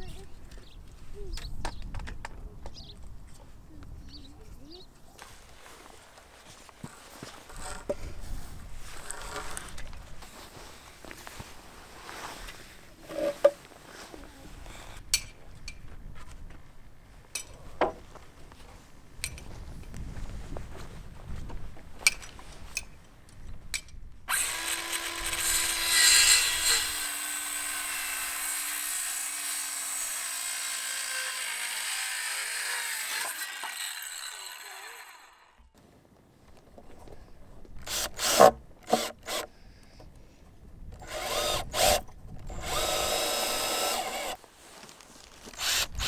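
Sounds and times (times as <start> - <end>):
power tool running: 24.3 - 35.6, 41.0 - 44.4, 45.6 - 46.0.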